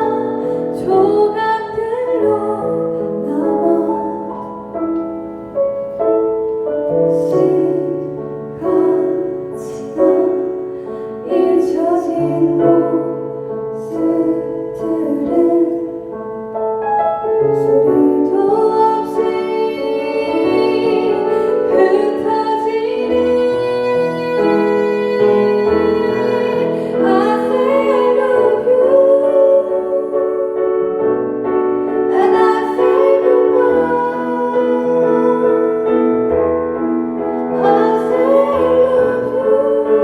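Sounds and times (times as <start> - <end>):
woman singing a slow song: 0.0 - 4.6, 7.0 - 16.1, 17.6 - 30.7, 32.1 - 36.3, 37.4 - 40.0
keyboard chords: 0.0 - 40.0.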